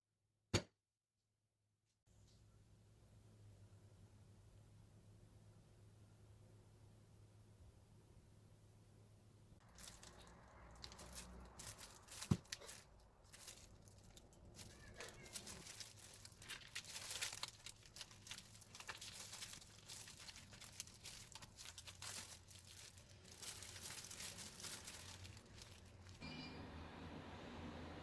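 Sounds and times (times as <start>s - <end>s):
crinkling and rustling: 9.6s - 26.2s.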